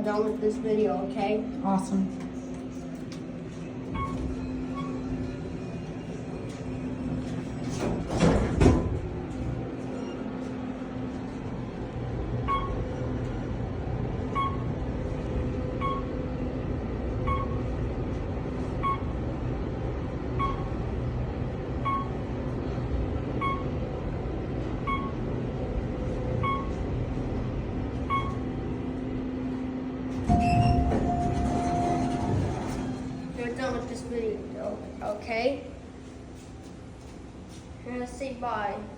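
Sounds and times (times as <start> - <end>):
elevator motor hum: 0.0 - 35.0
elevator thump: 7.7 - 9.3, 30.1 - 33.2.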